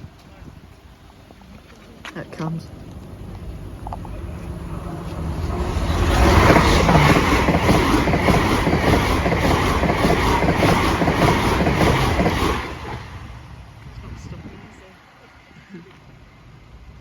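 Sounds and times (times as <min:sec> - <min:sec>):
train wheels clattering over rails: 0:03.4 - 0:13.7.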